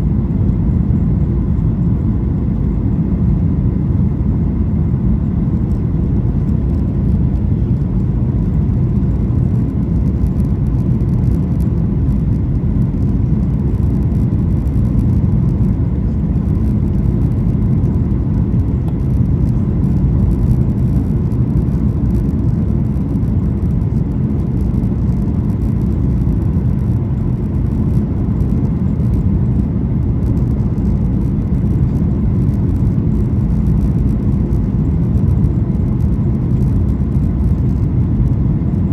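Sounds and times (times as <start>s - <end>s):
airplane engines rumbling: 0.0s - 38.9s
faint steady whine: 0.0s - 38.9s.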